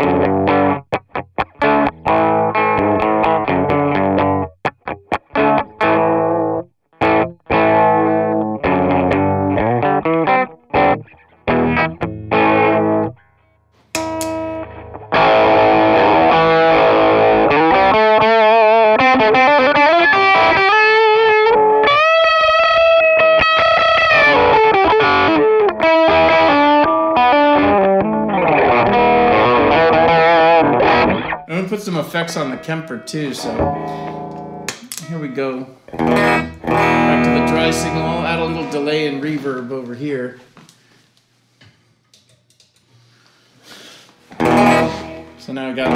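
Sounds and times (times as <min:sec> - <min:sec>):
overdriven electric guitar: 0:00.0 - 0:31.5, 0:32.5 - 0:39.4, 0:44.2 - 0:45.9.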